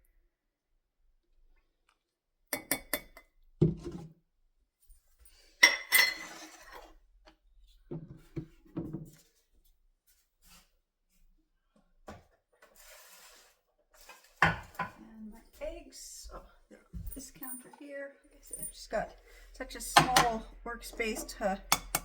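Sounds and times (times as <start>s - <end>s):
kitchenware clinking and knocking: 5.6s - 6.8s, 14.1s - 15.0s, 19.8s - 22.0s.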